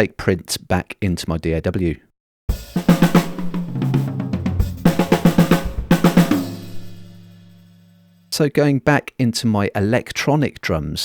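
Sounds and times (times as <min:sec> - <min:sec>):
drum kit playing fast hits: 0:02.5 - 0:07.9.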